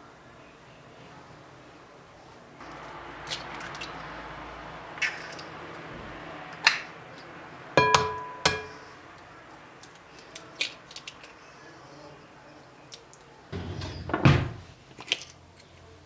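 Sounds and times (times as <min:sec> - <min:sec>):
ringing glass clinks: 0:07.8 - 0:08.7
kitchenware knocks and clicks: 0:07.8 - 0:08.8, 0:13.6 - 0:14.7.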